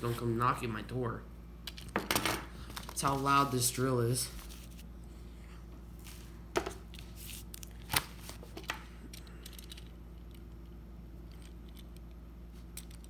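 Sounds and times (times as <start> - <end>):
steady low hum: 0.0 - 13.0
small metal parts clicking: 9.1 - 13.0.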